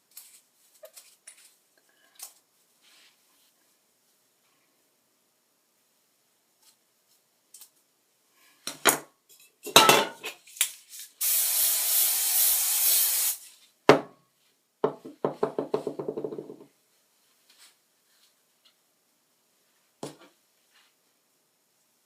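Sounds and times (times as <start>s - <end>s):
aerosol spray hissing: 11.2s - 13.5s.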